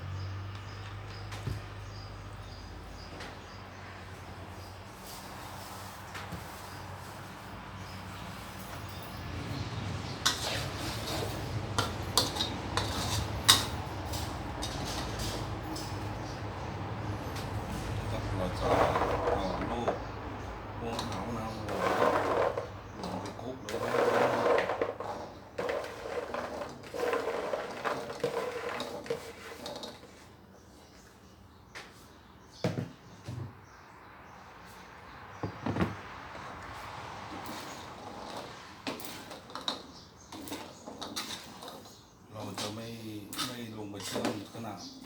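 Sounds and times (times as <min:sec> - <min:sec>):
metal utensils clinking on cookware: 0:08.4 - 0:16.7, 0:17.3 - 0:30.2, 0:37.4 - 0:44.6
knocks: 0:35.4 - 0:36.1.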